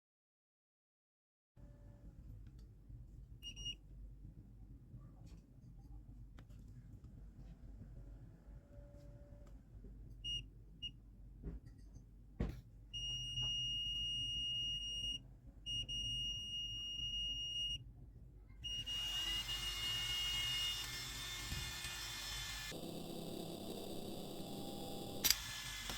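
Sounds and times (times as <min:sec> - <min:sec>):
multimeter beeps: 0:13.0 - 0:17.8, 0:18.6 - 0:22.0
click: 0:25.2 - 0:25.9
hiss: 0:25.2 - 0:25.9.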